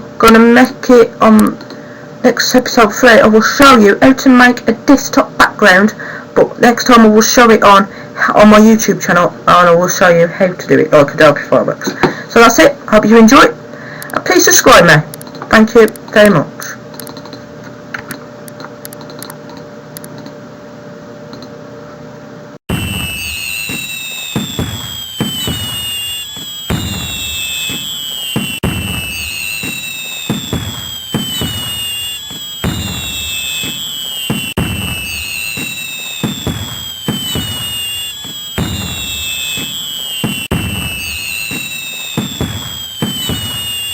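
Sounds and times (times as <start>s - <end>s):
fireworks crackling: 22.7s - 43.9s
fireworks whistles: 22.7s - 43.9s
low fireworks bangs: 22.7s - 43.9s.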